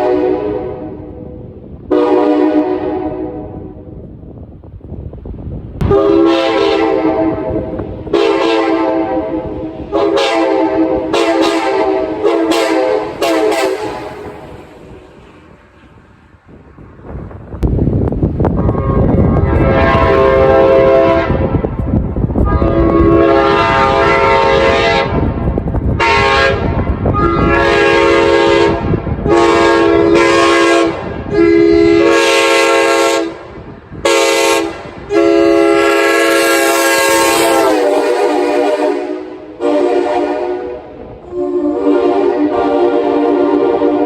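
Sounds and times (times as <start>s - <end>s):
train horn blasts: 0.0s - 3.9s, 5.8s - 15.3s, 18.6s - 21.8s, 22.4s - 25.4s, 26.0s - 44.0s.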